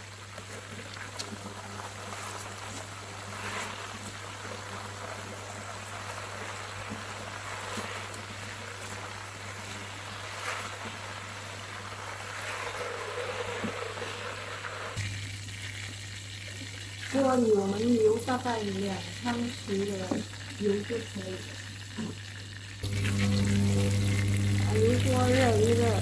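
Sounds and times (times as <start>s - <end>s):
chicken deep-frying in oil: 0.0s - 26.0s
low steady hum: 22.8s - 26.0s.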